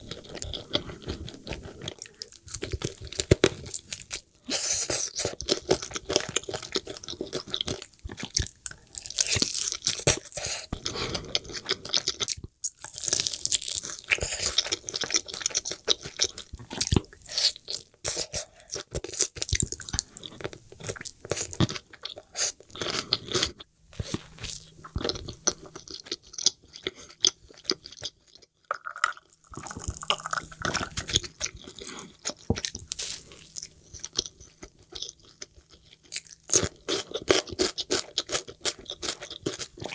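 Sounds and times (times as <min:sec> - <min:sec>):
crunching bites of fried food: 0:11.1 - 0:39.9.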